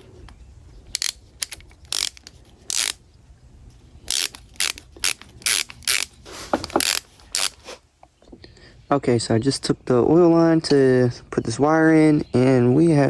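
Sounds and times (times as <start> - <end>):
hand ratchet clicking: 0.9 - 3.0, 4.1 - 7.6.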